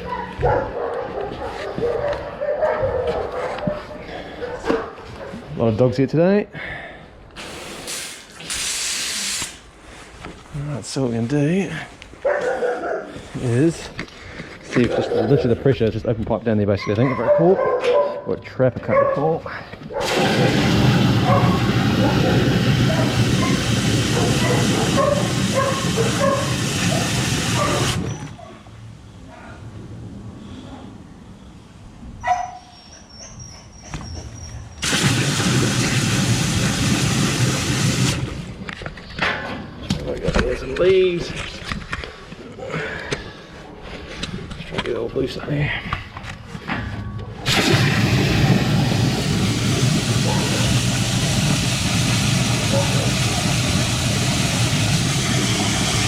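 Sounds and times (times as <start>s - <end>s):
pressure hose spraying water: 7.4s - 9.7s, 20.0s - 28.2s, 34.8s - 38.6s, 47.5s - 56.0s.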